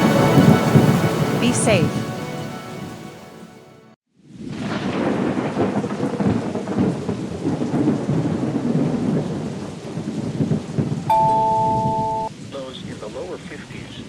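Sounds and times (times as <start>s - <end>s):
heavy rain: 0.0s - 3.2s, 4.4s - 11.7s
rumbling thunder: 4.5s - 11.0s.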